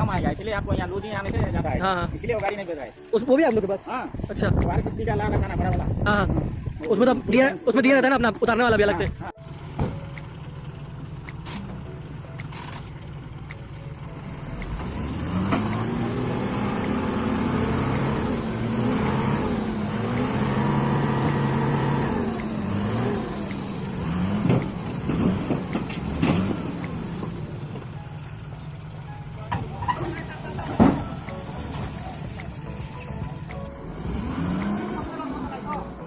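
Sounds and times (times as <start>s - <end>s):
heavy truck engine revving: 9.4s - 36.0s.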